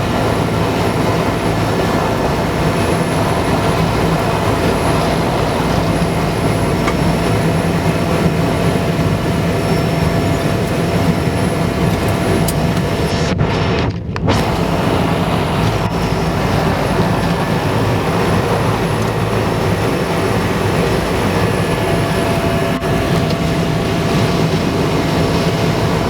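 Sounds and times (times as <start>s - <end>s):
turboprop aircraft drone: 0.0s - 26.0s.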